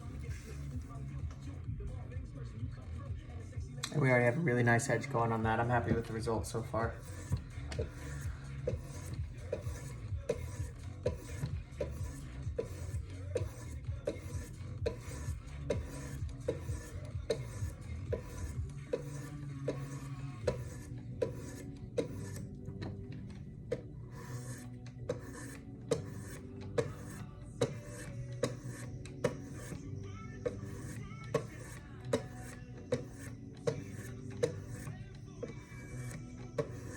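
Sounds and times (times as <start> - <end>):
sharpening stones scraping knife blade: 24.2 - 29.8.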